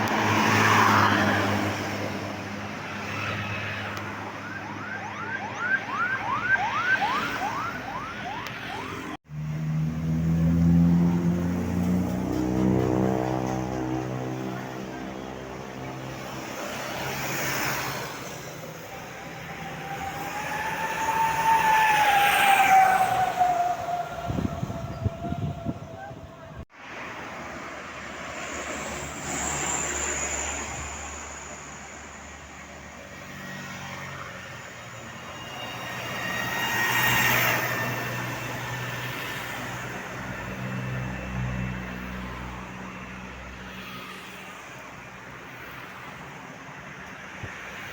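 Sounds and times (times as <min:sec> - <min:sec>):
vehicle passing: 0:00.0 - 0:31.8
bus driving past: 0:00.0 - 0:47.9.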